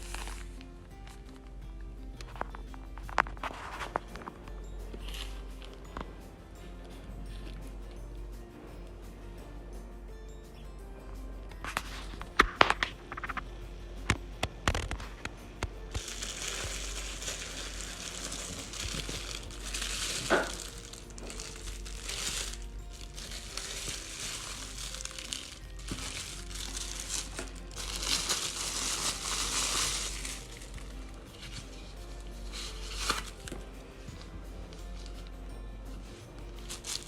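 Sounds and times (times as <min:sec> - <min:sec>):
plastic packaging crinkling: 0:00.0 - 0:00.6, 0:14.4 - 0:34.3, 0:36.6 - 0:37.0
soft background music: 0:00.0 - 0:37.0.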